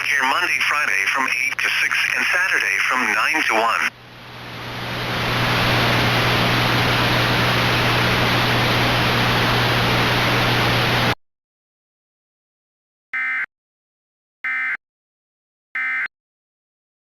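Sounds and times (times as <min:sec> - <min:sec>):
radio static hiss: 0:00.0 - 0:11.2
low hum: 0:03.9 - 0:11.2.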